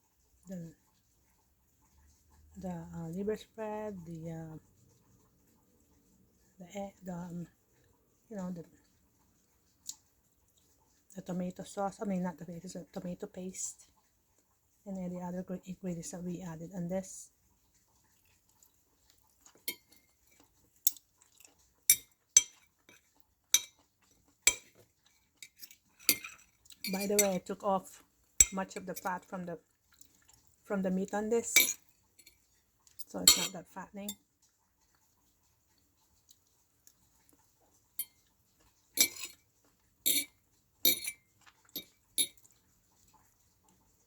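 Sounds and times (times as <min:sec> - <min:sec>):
cutlery clinking on a plate: 0:19.7 - 0:23.0, 0:23.6 - 0:23.8, 0:24.5 - 0:24.8, 0:25.4 - 0:27.4, 0:31.6 - 0:32.4, 0:33.2 - 0:33.6, 0:39.0 - 0:39.4, 0:40.1 - 0:42.5.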